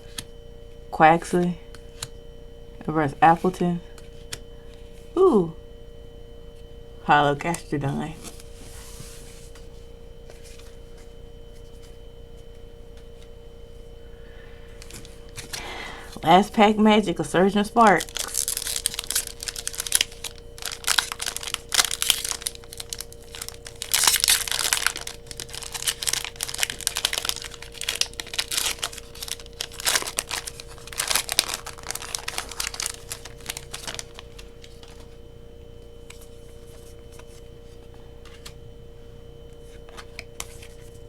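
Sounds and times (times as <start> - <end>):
foil wrapper crinkling and tearing: 17.8 - 35.2.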